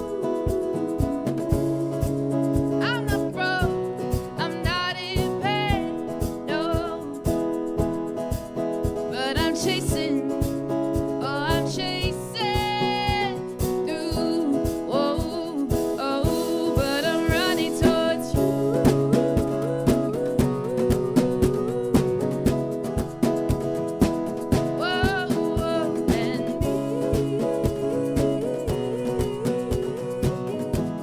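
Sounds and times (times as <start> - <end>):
strummed guitar: 0.0 - 31.0
person singing: 11.3 - 23.4, 24.5 - 31.0.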